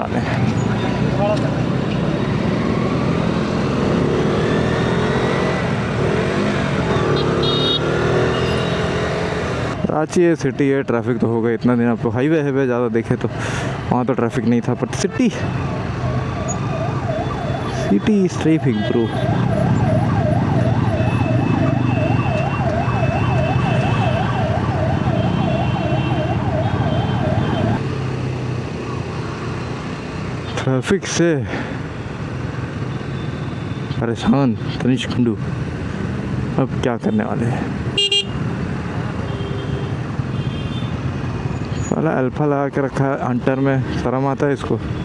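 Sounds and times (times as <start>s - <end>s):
engines humming in traffic: 0.0s - 45.0s
road rumble: 0.0s - 45.0s
motorcycle engine revving: 0.4s - 9.8s
electronic siren wailing: 1.8s - 9.8s, 15.8s - 27.8s.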